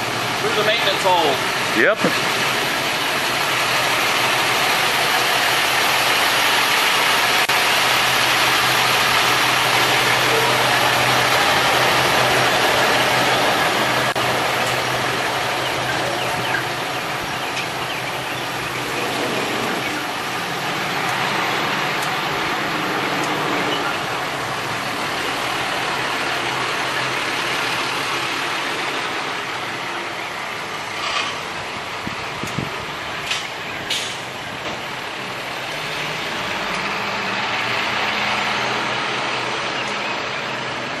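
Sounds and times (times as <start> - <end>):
road noise rush: 0.0 - 41.0
vehicle engine running: 0.0 - 41.0.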